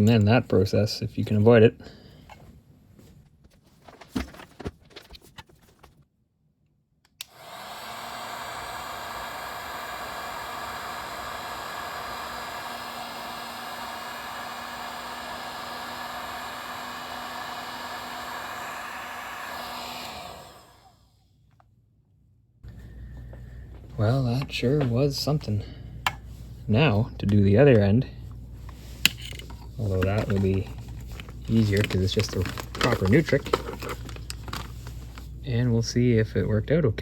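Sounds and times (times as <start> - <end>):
handling knocks: 3.5 - 6.0
heat gun blowing: 7.2 - 21.2.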